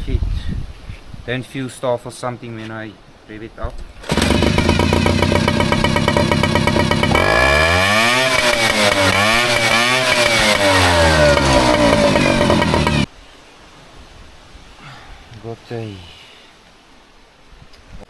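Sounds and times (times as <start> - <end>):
outboard motor idling and revving: 4.0 - 13.1.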